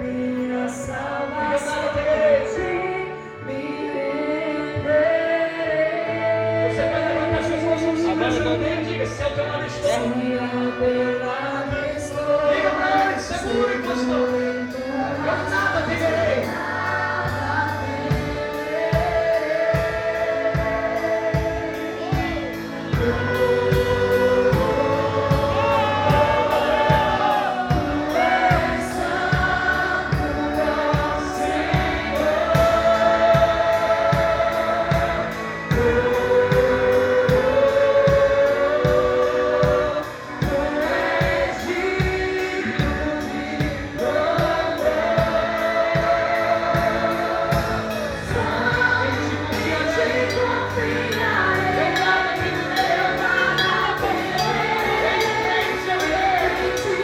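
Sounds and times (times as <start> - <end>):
singers and choir: 0.0 - 57.0
steady drum beat: 14.7 - 57.0.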